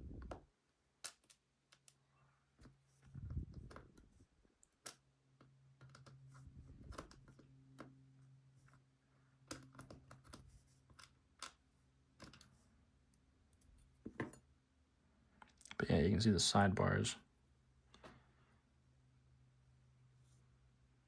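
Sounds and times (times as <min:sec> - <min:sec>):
small metal lock parts clicking: 0:01.0 - 0:02.0, 0:06.9 - 0:08.4, 0:09.5 - 0:11.6, 0:12.2 - 0:14.4.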